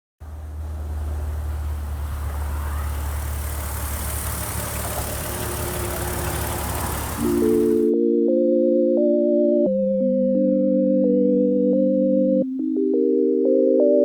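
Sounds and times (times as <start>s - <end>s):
car engine idling: 0.2s - 7.9s.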